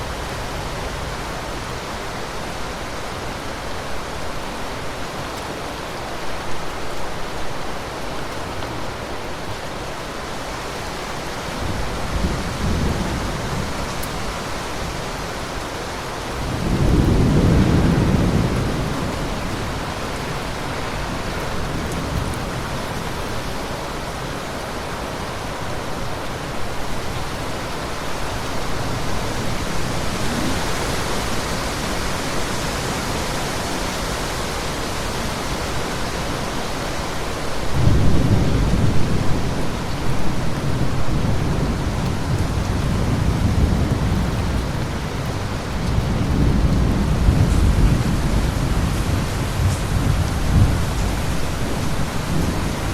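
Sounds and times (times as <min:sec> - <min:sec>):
steady rain falling: 0:00.0 - 0:52.9
thunder rumbling: 0:16.3 - 0:23.2, 0:37.6 - 0:52.9.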